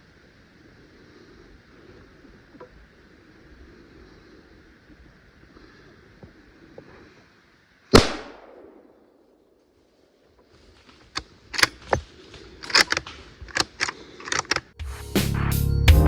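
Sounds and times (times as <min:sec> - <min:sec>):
loud gunshot: 0:08.0 - 0:08.8
sharp cracks and snaps: 0:10.4 - 0:14.8.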